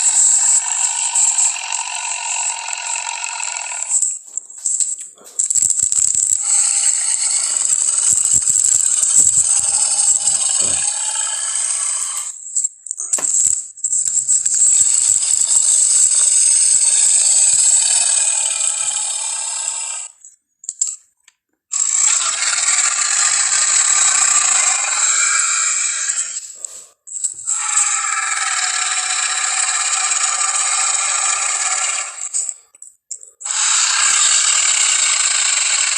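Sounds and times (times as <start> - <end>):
monster calling harshly: 22.0 - 26.5, 27.5 - 32.3, 33.4 - 35.8.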